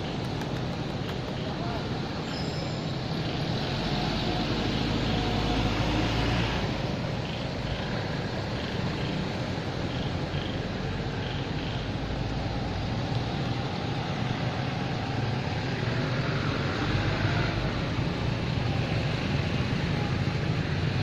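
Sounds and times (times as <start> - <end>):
faint high chirp: 2.2 - 3.0.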